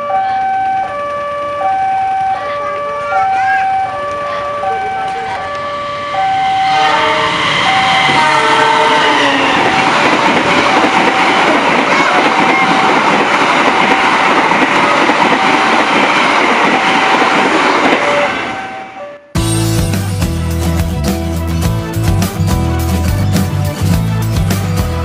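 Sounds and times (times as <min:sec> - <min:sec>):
crossing two-tone warning alarm: 0:00.0 - 0:19.4
train rumble and clatter: 0:00.3 - 0:18.9
train horn: 0:02.2 - 0:13.1, 0:13.9 - 0:19.4.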